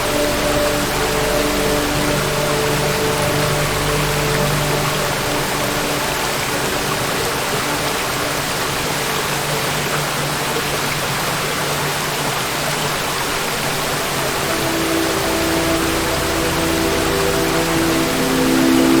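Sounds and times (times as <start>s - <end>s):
faint held musical tones: 0.0s - 11.5s
waterfall rushing: 0.0s - 19.0s.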